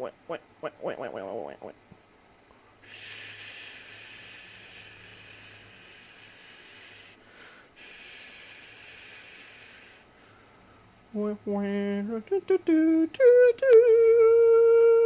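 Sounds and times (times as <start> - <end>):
man making hissing sound: 2.8 - 10.2.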